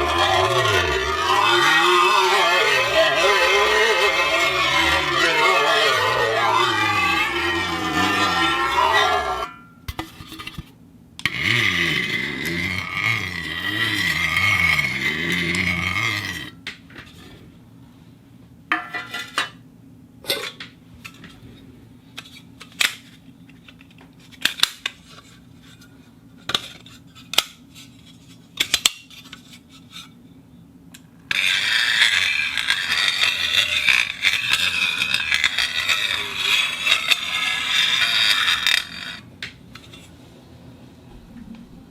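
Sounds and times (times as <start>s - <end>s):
metal clicks and scrapes: 0.0s - 9.5s, 31.3s - 39.2s
steel sliding against steel: 0.0s - 9.6s, 31.3s - 39.2s.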